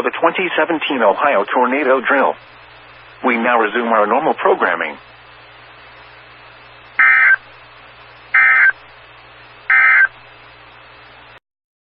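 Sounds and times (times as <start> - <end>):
steady background hiss: 0.0 - 11.4
digital data squawk bursts: 7.0 - 7.4, 8.4 - 8.8, 9.7 - 10.1.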